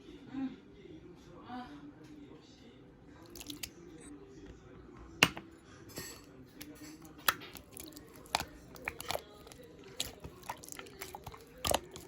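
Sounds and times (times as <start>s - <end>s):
slime clicking and popping: 7.1s - 12.0s.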